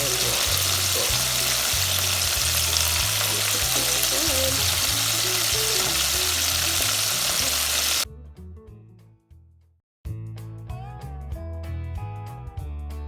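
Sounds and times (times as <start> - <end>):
chicken sizzling in hot oil: 0.0 - 8.0.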